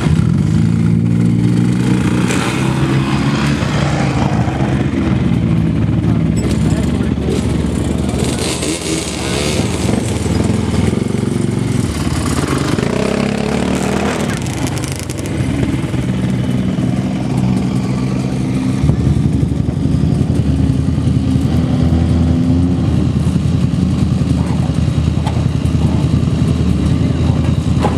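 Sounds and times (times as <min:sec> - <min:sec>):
atv engine revving: 0:00.0 - 0:27.9.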